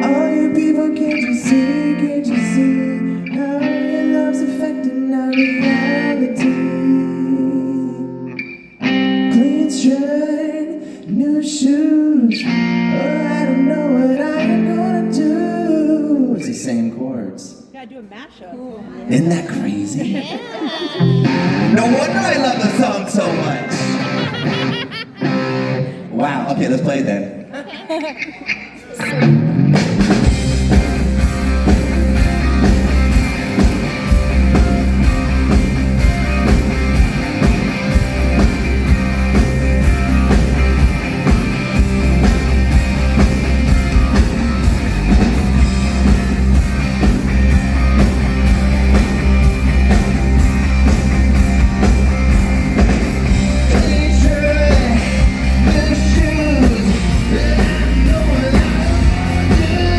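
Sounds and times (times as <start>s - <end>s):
rock band playing loudly: 20.9s - 26.1s, 29.0s - 59.9s.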